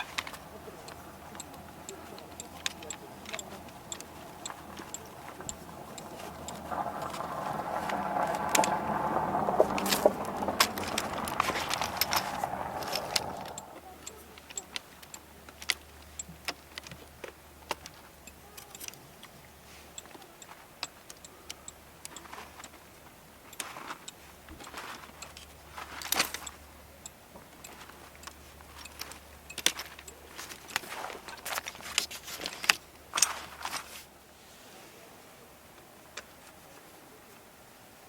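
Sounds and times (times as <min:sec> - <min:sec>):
gear clicking and clinking: 0:00.0 - 0:34.1
rustling: 0:27.4 - 0:35.2.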